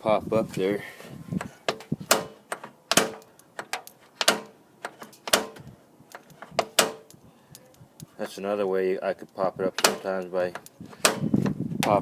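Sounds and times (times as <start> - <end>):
door latch clicking: 1.7 - 7.1.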